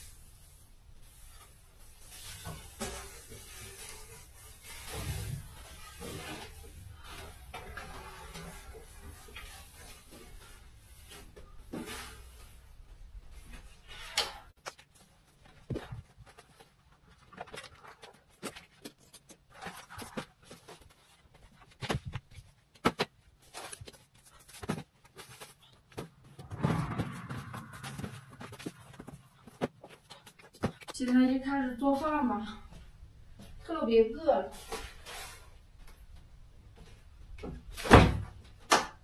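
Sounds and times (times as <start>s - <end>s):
rustling: 0.0s - 31.0s.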